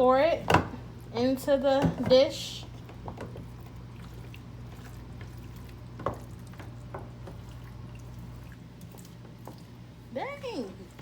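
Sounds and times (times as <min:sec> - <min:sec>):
wet pasta squishing: 0:02.6 - 0:11.0.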